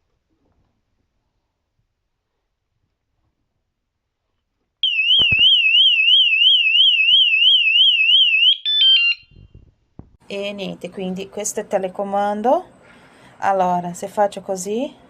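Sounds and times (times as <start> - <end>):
warbling alarm siren: 4.8 - 9.4
knocks: 5.2 - 5.5.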